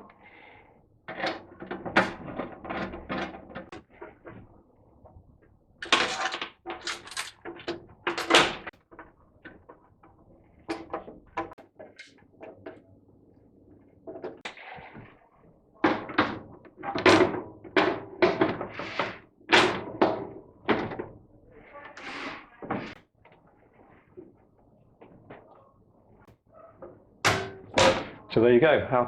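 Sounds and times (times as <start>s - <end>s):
metal clunks and rattles: 1.1s - 12.8s, 15.8s - 21.3s, 26.2s - 28.3s.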